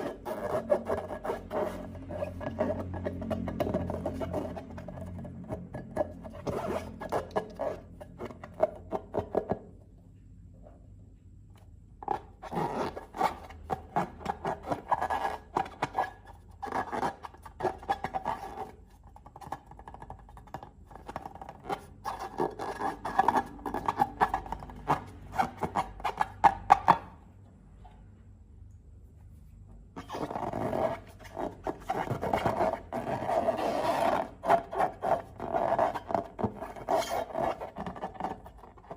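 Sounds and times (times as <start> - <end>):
slime crackling and scraping: 30.0 - 38.9.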